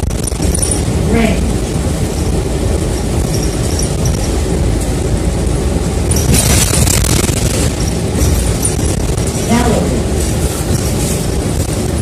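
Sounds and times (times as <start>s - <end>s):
bus engine and road rumble: 0.0s - 12.0s.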